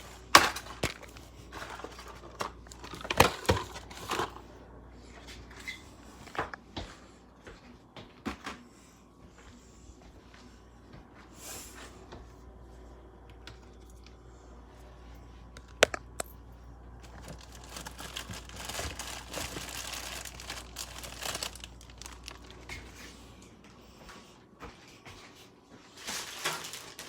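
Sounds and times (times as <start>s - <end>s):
plastic packaging crinkling: 0.0s - 4.4s, 17.0s - 23.1s, 26.0s - 27.0s.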